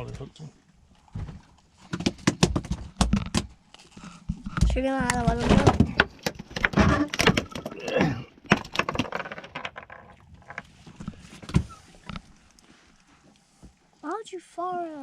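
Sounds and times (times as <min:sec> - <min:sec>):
knocks and rattling on boat: 0:04.5 - 0:07.8, 0:08.4 - 0:11.8.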